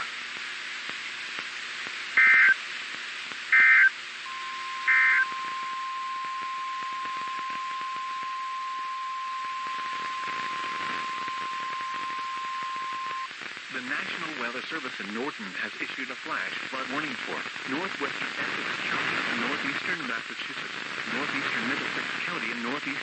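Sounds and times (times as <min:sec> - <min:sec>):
radio hiss: 0:00.0 - 0:23.0
steady alarm tone: 0:03.5 - 0:13.3
screeching digital data bursts: 0:04.8 - 0:05.8.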